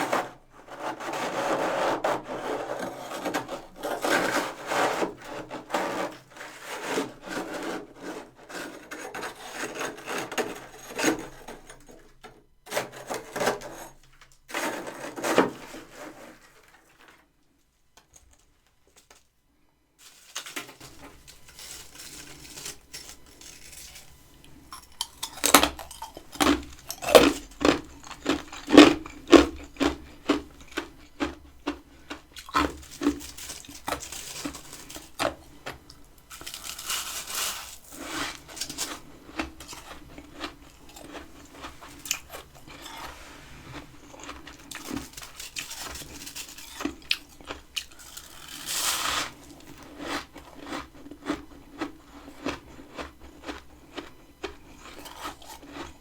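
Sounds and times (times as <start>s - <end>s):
frost being scraped and crunched: 0.0s - 12.0s, 12.7s - 17.2s, 20.0s - 56.0s
sharp crunches: 24.7s - 31.8s.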